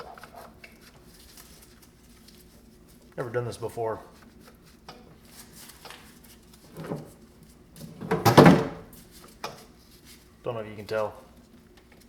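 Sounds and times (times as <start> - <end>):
hand tools knocking and scraping: 6.7 - 7.2, 7.8 - 9.6.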